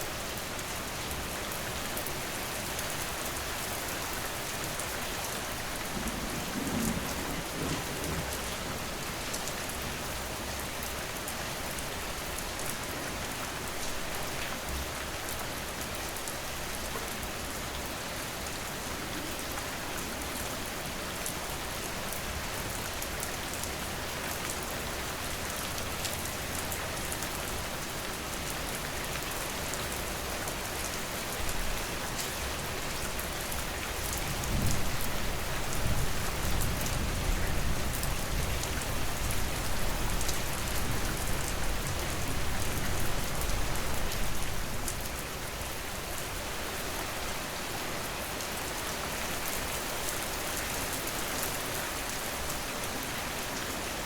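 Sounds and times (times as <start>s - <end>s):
heavy rain falling: 0.0s - 54.0s
thunder rumbling: 5.4s - 9.3s.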